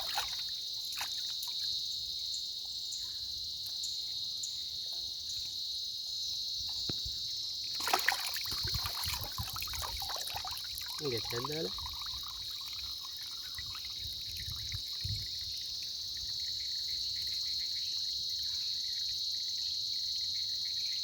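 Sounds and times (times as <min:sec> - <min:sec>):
water splashing and trickling: 0:00.0 - 0:02.1, 0:07.6 - 0:18.1.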